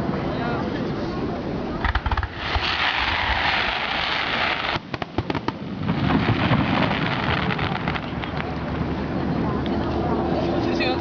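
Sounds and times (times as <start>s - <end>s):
fireworks banging: 1.7s - 8.9s
fireworks hissing crackle: 1.8s - 8.7s.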